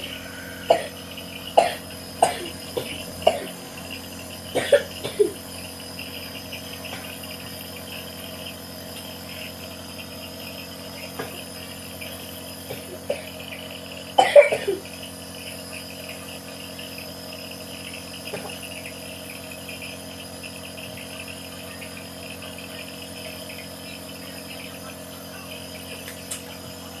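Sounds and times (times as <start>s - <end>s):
person coughing: 0.0s - 3.6s, 4.5s - 5.4s, 12.7s - 13.5s, 14.1s - 14.9s
insects chirring: 0.0s - 27.0s.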